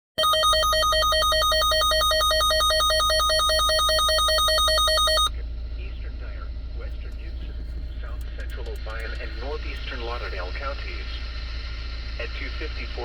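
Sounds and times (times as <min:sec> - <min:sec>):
buzzy two-pitch alert warble: 0:00.2 - 0:05.3.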